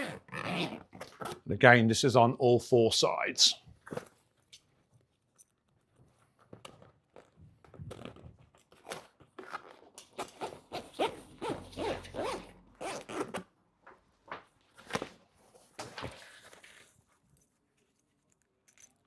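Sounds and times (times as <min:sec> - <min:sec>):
fabric zip being pulled: 0:00.0 - 0:01.2, 0:08.8 - 0:13.5.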